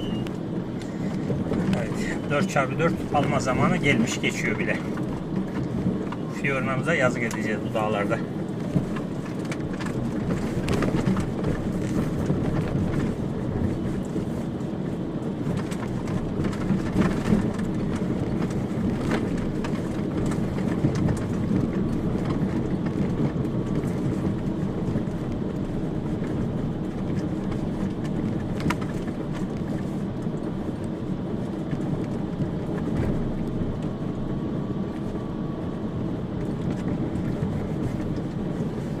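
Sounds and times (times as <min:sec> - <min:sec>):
body and suspension rattling: 0:00.0 - 0:39.0
van engine and tyres rumbling: 0:00.0 - 0:39.0.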